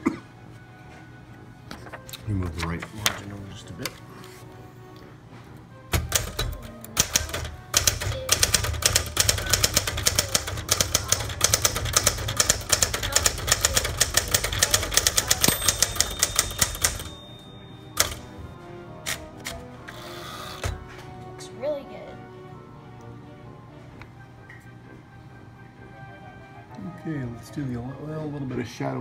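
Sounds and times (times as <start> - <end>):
manual typewriter typing: 6.0 - 17.4, 18.0 - 18.3
typewriter margin bell ringing: 10.9 - 18.4.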